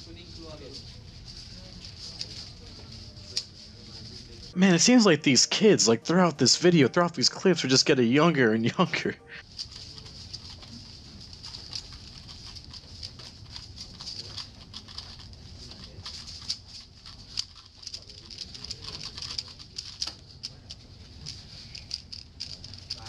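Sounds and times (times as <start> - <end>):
plastic puzzle cube clicking: 11.4 - 23.0.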